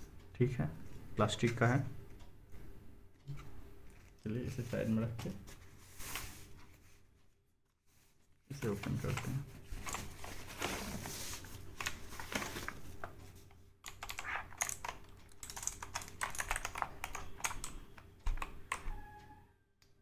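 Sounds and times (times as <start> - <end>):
rustling: 3.8 - 13.5
mechanical keyboard clicking: 13.8 - 19.0.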